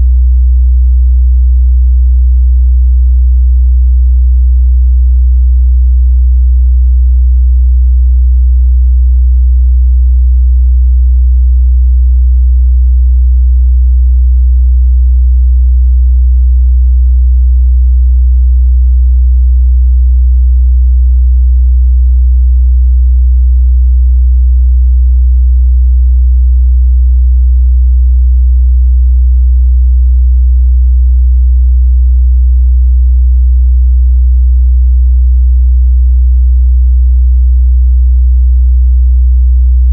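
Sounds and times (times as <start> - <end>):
low sine-wave test tone: 0.0 - 36.4.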